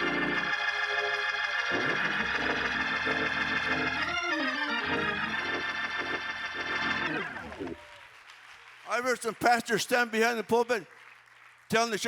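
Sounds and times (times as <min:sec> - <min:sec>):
organ playing sustained chords: 0:00.0 - 0:07.8.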